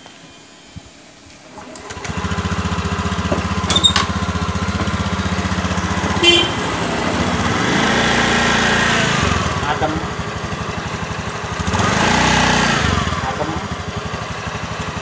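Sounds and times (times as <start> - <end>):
scooter engine starting and idling: 0.0 - 15.0.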